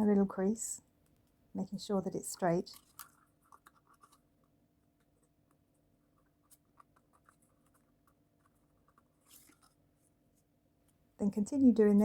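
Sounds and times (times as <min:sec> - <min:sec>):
thin card rustling and creasing: 0:02.4 - 0:11.0.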